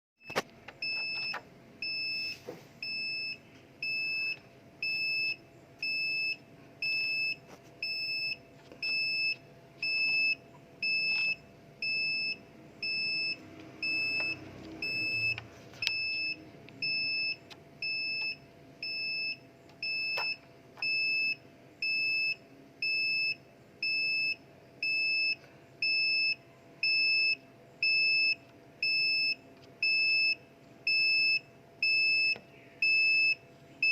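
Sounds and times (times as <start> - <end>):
vehicle reversing alarm beeping: 0.2 - 33.9.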